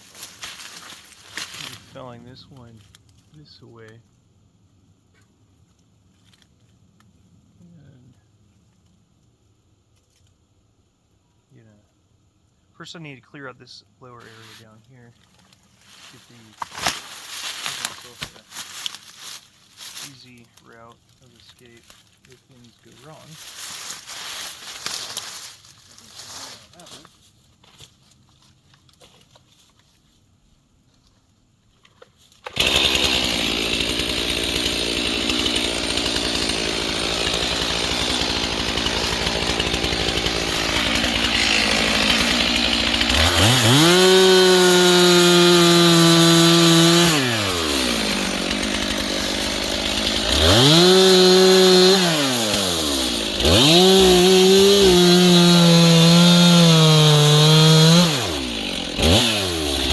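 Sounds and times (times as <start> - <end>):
chainsaw starting and revving: 32.4 - 59.9.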